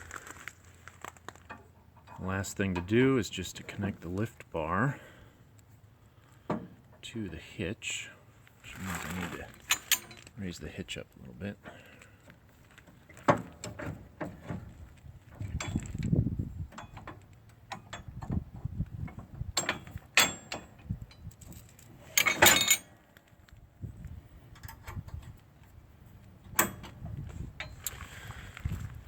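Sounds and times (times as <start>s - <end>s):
steel parts clanking: 8.7s - 10.4s, 15.3s - 16.0s, 16.7s - 18.4s, 19.1s - 23.1s, 26.4s - 28.2s
metallic rattle: 8.8s - 10.4s, 12.6s - 23.1s, 26.0s - 28.2s.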